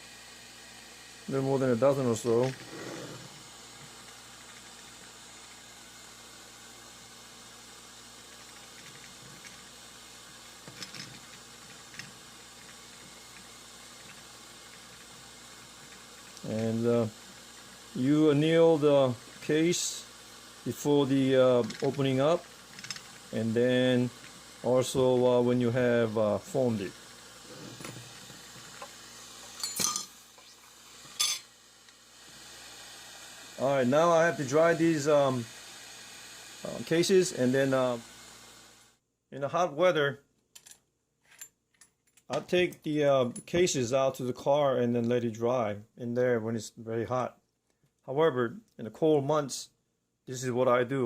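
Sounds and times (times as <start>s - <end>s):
torch flame hissing: 0.0s - 39.0s.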